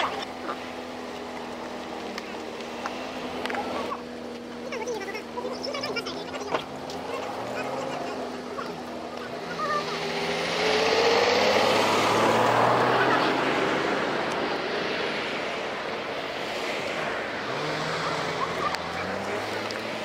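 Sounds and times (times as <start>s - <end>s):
vehicle passing close by: 0.0s - 20.0s.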